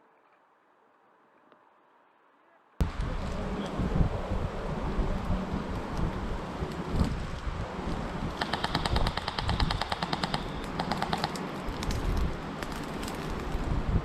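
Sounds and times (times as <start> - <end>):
airsoft rifle firing: 8.4 - 11.4.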